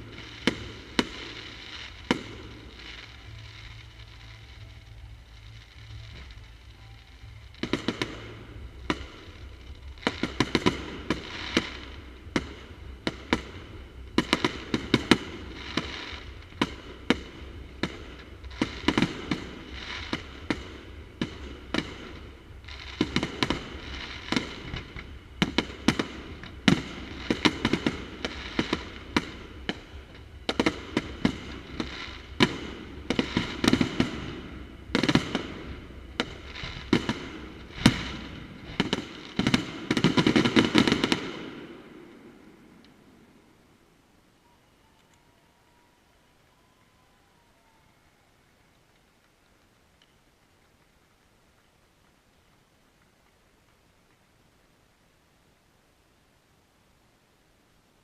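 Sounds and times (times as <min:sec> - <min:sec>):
fireworks bangs: 0:00.0 - 0:43.6
fireworks crackling: 0:00.0 - 0:56.7.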